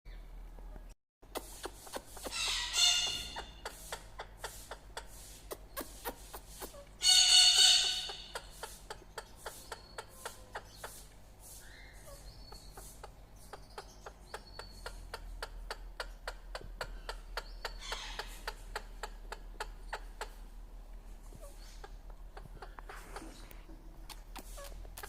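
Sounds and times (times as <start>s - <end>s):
soft bird chirps: 0.1s - 20.5s, 21.1s - 25.0s
bird harsh call: 2.2s - 3.9s, 5.6s - 14.8s.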